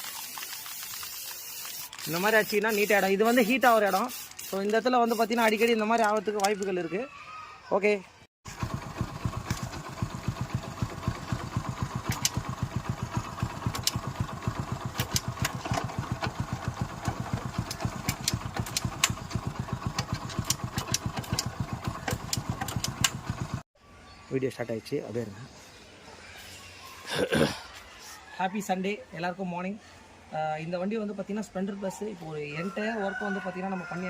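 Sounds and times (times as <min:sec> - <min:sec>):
motorcycle engine idling: 0:08.5 - 0:23.6.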